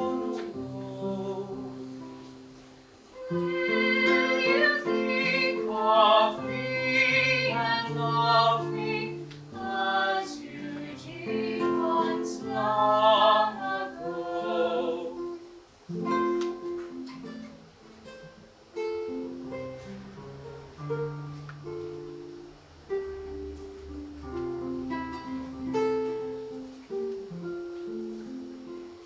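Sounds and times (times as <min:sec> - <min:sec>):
classical singing voice: 0:00.0 - 0:15.6
plucked guitar: 0:00.0 - 0:29.0.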